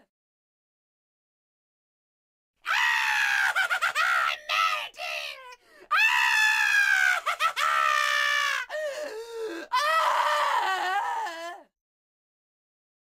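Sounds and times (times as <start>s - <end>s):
shrill witch scream: 2.6s - 8.8s, 9.6s - 11.6s.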